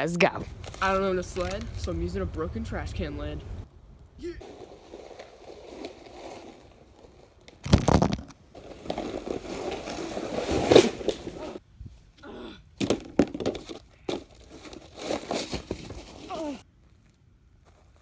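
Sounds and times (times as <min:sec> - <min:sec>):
plastic sled scraping over snow: 0:00.4 - 0:03.3, 0:04.4 - 0:11.6, 0:13.0 - 0:16.6.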